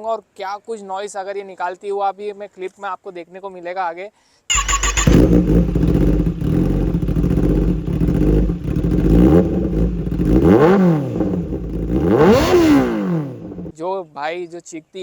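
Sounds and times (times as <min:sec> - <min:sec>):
motorcycle engine revving: 0:04.5 - 0:13.8.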